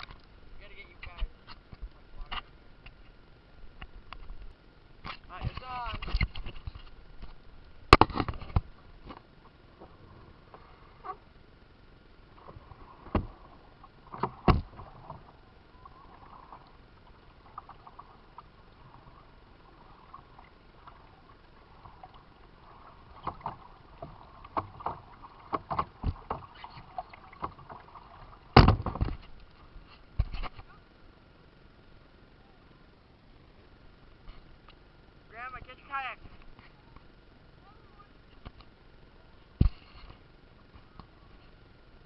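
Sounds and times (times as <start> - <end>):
paddle splashing water: 12.2 - 30.7.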